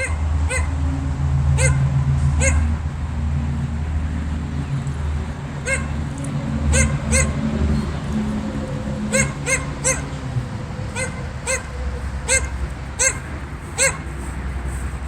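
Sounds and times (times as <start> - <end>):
high yelping animal calls: 0.0 - 0.8, 1.5 - 2.8, 5.6 - 14.1.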